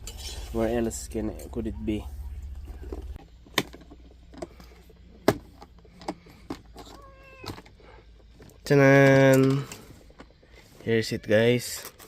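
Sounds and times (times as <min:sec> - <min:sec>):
hard objects clicking and knocking: 0:02.8 - 0:10.4.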